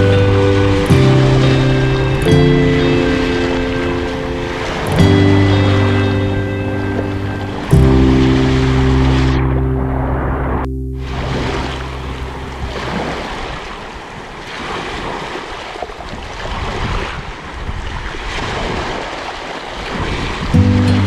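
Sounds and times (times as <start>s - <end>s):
low sustained music tones: 0.0s - 13.3s, 20.5s - 21.0s
sea waves washing ashore: 0.0s - 21.0s.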